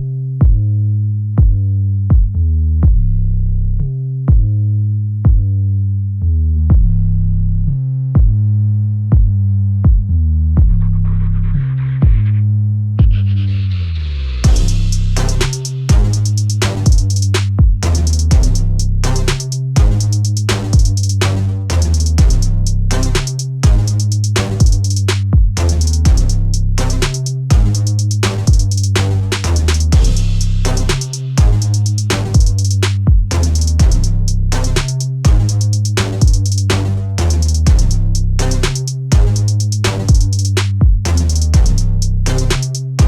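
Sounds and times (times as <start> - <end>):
synthesizer bass notes: 0.0 - 43.0
drum machine beat: 14.4 - 43.0.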